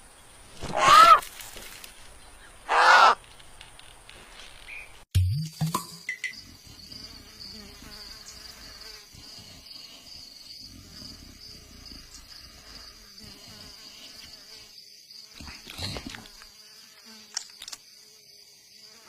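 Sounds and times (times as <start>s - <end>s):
high-pitched insect trill: 6.1s - 19.0s.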